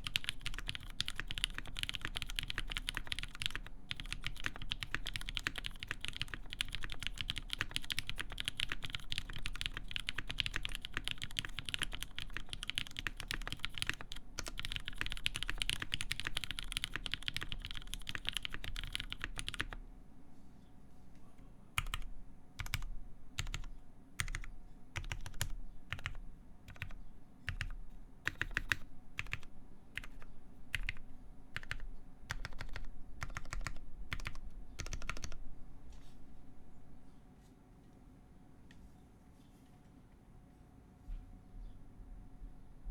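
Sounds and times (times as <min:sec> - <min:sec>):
mechanical keyboard typing: 0:00.0 - 0:19.8, 0:21.8 - 0:31.0, 0:31.6 - 0:35.4.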